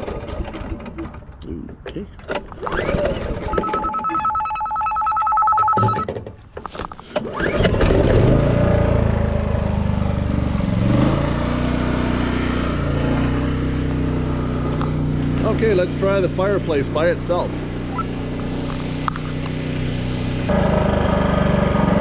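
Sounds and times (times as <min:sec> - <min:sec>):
generator engine running: 0:07.5 - 0:22.0.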